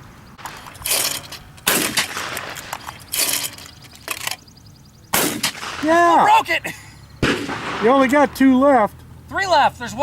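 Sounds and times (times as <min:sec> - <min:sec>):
shotgun shots echoing: 0:01.6 - 0:02.8, 0:05.1 - 0:06.0, 0:07.2 - 0:08.6.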